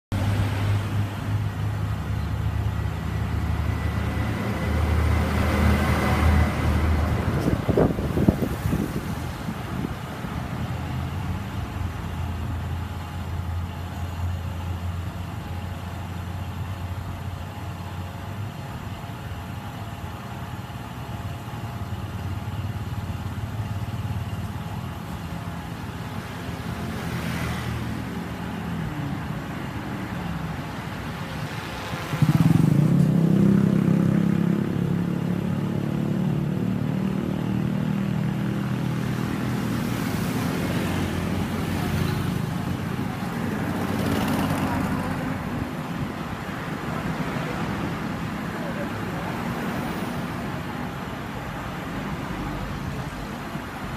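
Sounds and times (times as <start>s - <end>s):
engines humming: 0.1s - 53.9s
loud engine: 0.1s - 53.9s
vehicle passing: 2.5s - 9.9s, 26.5s - 36.7s, 37.9s - 46.0s.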